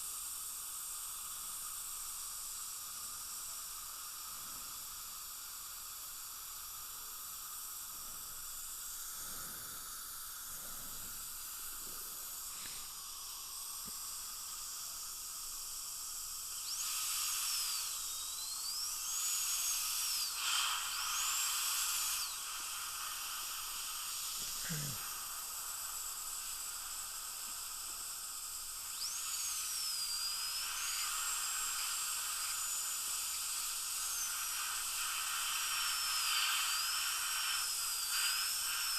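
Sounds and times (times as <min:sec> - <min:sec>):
dental drill whining: 0:00.0 - 0:38.9
steady hiss: 0:00.0 - 0:38.9.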